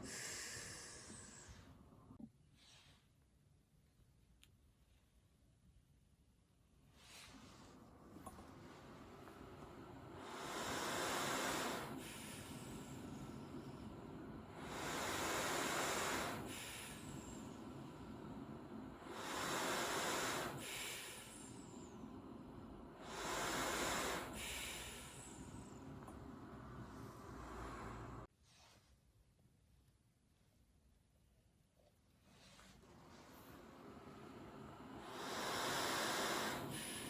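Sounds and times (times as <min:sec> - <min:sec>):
breathing machine blowing air: 0:00.0 - 0:03.0, 0:07.0 - 0:28.3, 0:32.3 - 0:37.0.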